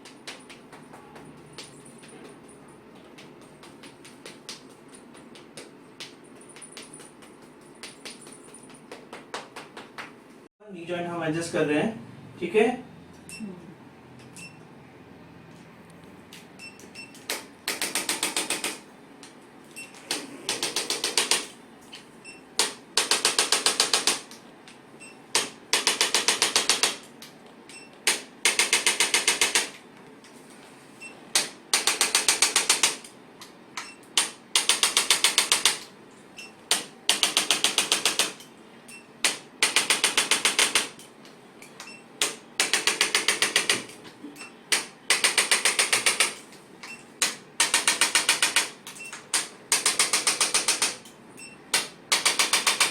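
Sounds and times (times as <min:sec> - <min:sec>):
device rapid clicking taps: 0:03.0 - 0:10.2, 0:17.2 - 0:18.8, 0:20.1 - 0:21.5, 0:22.6 - 0:24.4, 0:25.3 - 0:27.3, 0:28.0 - 0:29.8, 0:31.3 - 0:33.1, 0:33.8 - 0:35.9, 0:36.7 - 0:38.5, 0:39.2 - 0:41.0, 0:42.2 - 0:44.0, 0:44.7 - 0:46.4, 0:47.2 - 0:51.1, 0:51.7 - 0:52.9.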